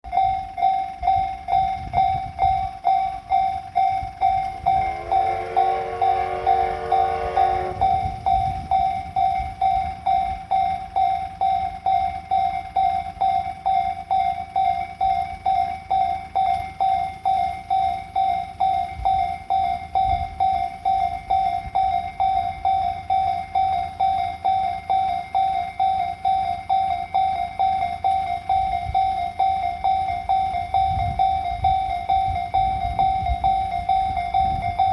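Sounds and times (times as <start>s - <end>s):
level crossing bell ringing: 0.1s - 34.9s
steam locomotive whistle: 4.6s - 8.7s.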